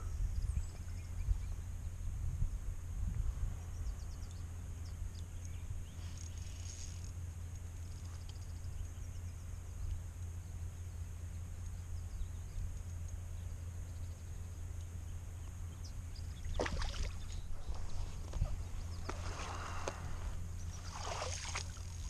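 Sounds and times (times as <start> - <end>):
steady low rumble: 0.0 - 22.0
sharp splashes or knocks: 16.5 - 17.3, 20.8 - 21.8
river water flowing: 16.5 - 18.0, 18.9 - 22.0.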